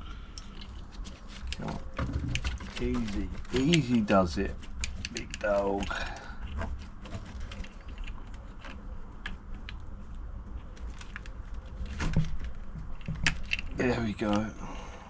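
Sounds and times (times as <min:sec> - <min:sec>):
metal parts clicking and tapping: 0:00.3 - 0:06.6, 0:07.2 - 0:09.8, 0:12.0 - 0:14.5.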